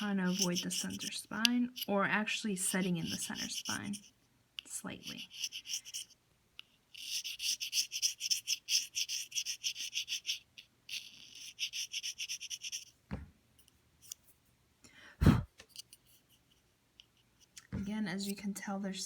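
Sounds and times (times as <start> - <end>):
knife scraping cane reed: 0.0 - 2.0, 2.6 - 4.1, 5.1 - 6.2, 6.9 - 12.9.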